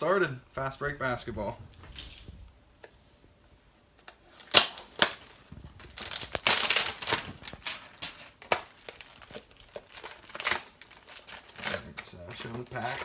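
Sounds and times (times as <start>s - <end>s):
packaging crackling and rustling: 4.0s - 13.0s
packaging clicks: 4.1s - 13.0s.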